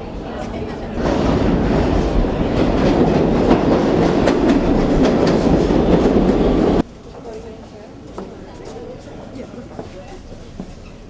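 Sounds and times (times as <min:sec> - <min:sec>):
subway train rumbling on rails: 0:00.0 - 0:11.0
wheels clacking over rail joints: 0:00.7 - 0:06.8.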